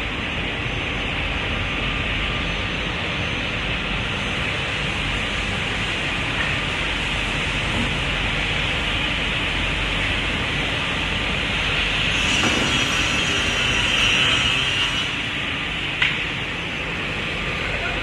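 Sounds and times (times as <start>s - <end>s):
saw blade cutting whine: 10.5s - 18.0s
table saw running: 10.5s - 18.0s.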